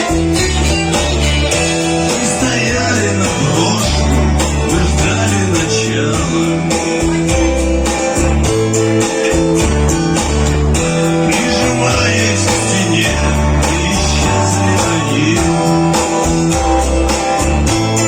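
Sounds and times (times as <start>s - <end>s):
bass notes: 0.0s - 18.0s
guitar song: 0.0s - 18.0s
steady beat: 0.0s - 18.0s.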